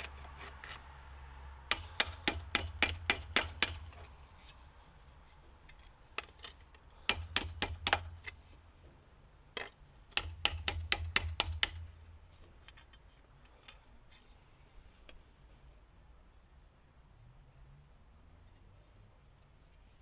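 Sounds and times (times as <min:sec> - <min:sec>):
hammer pounding metal: 0:01.6 - 0:04.0.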